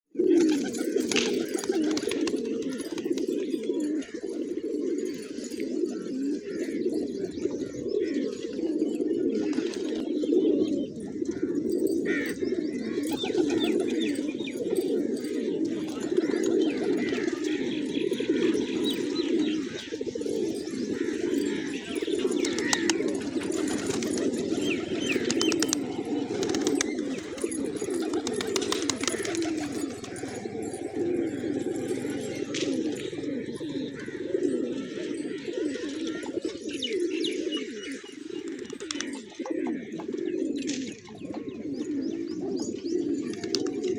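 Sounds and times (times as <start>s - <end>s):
pigeons cooing: 0.0s - 43.9s
high chirps and clicks: 21.8s - 33.1s.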